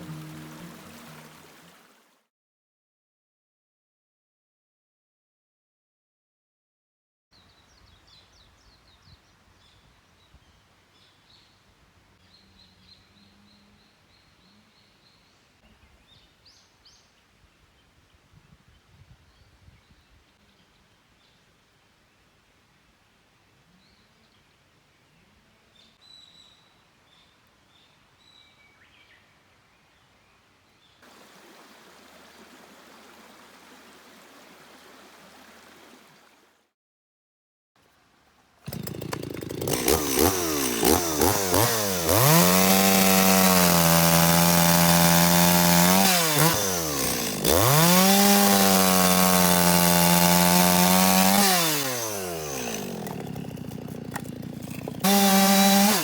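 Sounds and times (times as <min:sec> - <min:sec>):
chainsaw revving: 0:38.6 - 0:56.0.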